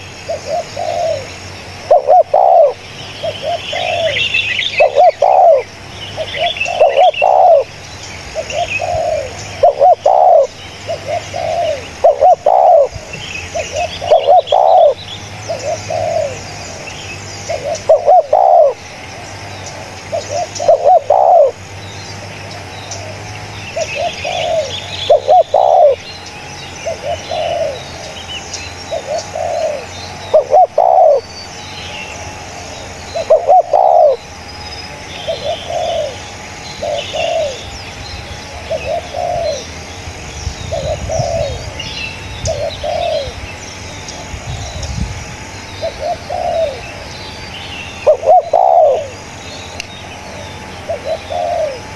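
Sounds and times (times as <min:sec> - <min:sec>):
dove cooing: 0:00.0 - 0:16.9, 0:17.5 - 0:18.9, 0:19.8 - 0:21.6, 0:23.0 - 0:26.1, 0:26.8 - 0:28.2, 0:28.9 - 0:31.4, 0:32.6 - 0:34.4, 0:35.1 - 0:39.9, 0:40.6 - 0:43.5, 0:45.7 - 0:47.1, 0:47.9 - 0:49.4, 0:50.3 - 0:51.9
small birds chirping faintly: 0:00.0 - 0:51.9.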